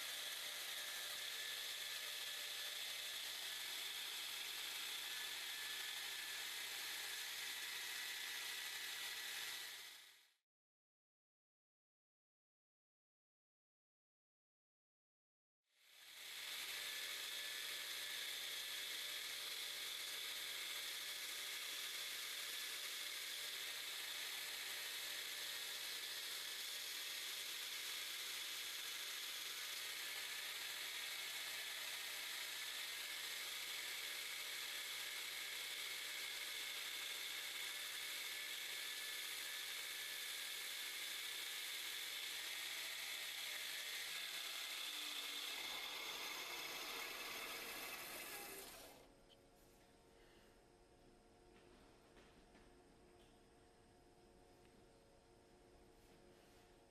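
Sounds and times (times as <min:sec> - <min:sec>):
bench grinder whirring: 0:00.0 - 0:10.4, 0:15.8 - 0:49.2.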